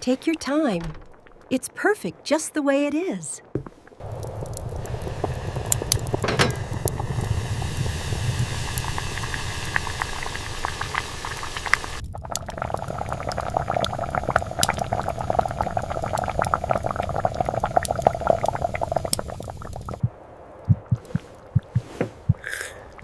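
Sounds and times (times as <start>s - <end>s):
pot bubbling at a simmer: 3.4s - 23.0s.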